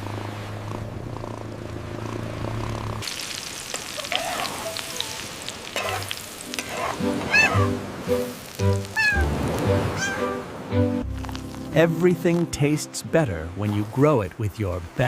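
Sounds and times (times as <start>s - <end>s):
food sizzling in a pan: 3.0s - 7.1s.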